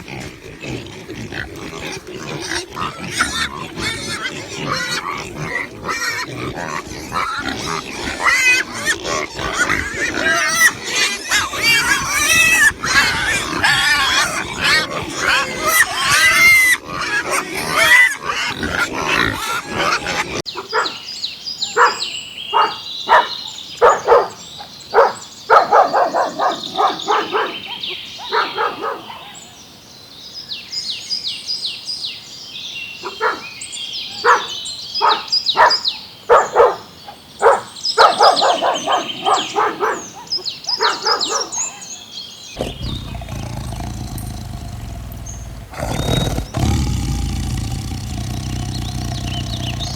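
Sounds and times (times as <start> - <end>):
dog barking: 19.0 - 21.0, 21.7 - 29.4, 33.0 - 33.5, 34.2 - 41.8.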